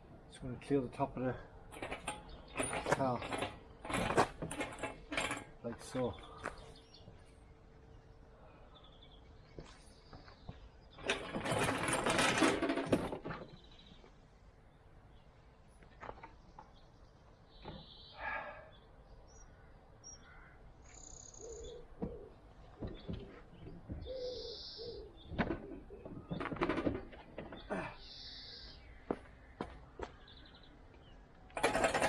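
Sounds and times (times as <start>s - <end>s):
handling knocks and clicks: 1.7s - 6.1s, 10.1s - 13.9s, 22.8s - 24.2s, 25.2s - 27.8s, 31.4s - 32.0s
small birds chirping: 5.6s - 11.1s, 13.4s - 31.6s.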